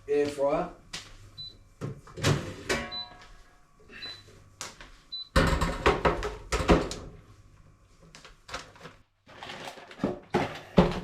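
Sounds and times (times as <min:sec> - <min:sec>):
kitchen things clattering: 0:08.6 - 0:11.0.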